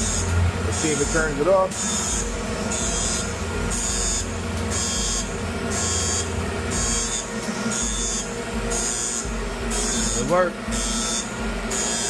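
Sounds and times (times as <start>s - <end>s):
smoke alarm beeping: 0.0s - 11.3s
boiler low rumble: 0.0s - 11.8s.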